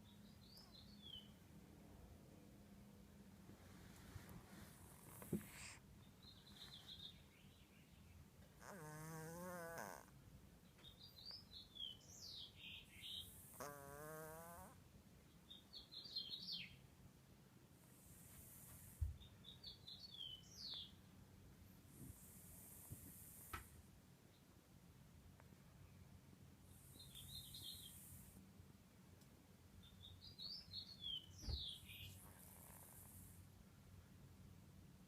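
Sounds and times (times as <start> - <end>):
cat snoring: 8.6 - 10.1, 13.2 - 14.8, 17.9 - 19.1, 21.9 - 23.7, 32.2 - 33.4
breathy hiss: 17.8 - 19.0.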